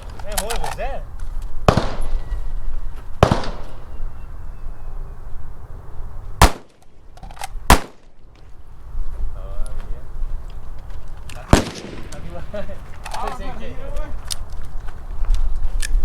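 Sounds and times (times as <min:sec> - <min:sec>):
gunshots with echo: 0:01.7 - 0:02.2, 0:03.2 - 0:03.9, 0:06.4 - 0:06.8, 0:11.5 - 0:12.2.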